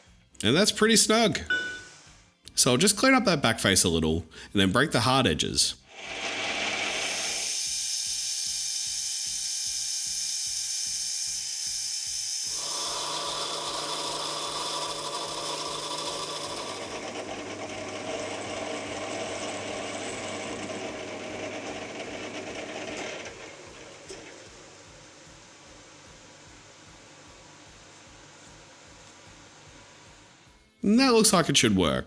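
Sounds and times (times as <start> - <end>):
metal lathe cutting steel: 5.9 - 24.8
high hiss: 6.8 - 13.3.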